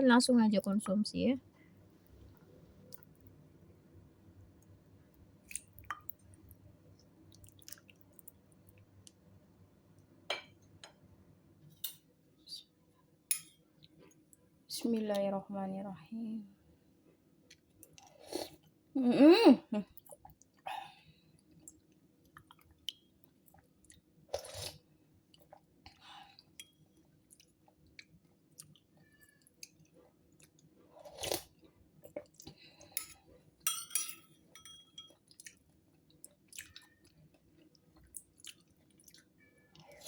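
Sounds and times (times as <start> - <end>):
person chewing: 26.4 - 32.6, 35.2 - 40.0.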